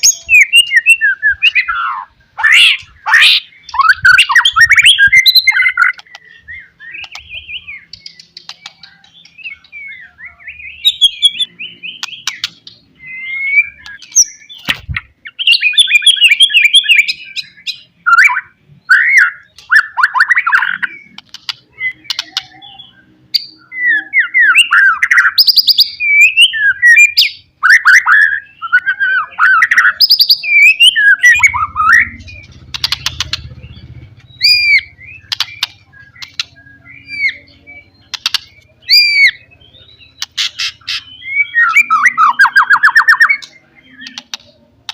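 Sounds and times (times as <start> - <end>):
bird singing whistled song: 0.0 - 44.7
bird sharp clicks: 5.8 - 6.3, 7.0 - 7.3, 7.9 - 9.2, 12.0 - 12.8, 13.8 - 15.0, 21.1 - 22.5, 32.4 - 33.6, 34.2 - 36.6, 38.1 - 38.7, 40.2 - 40.9, 43.3 - 44.9.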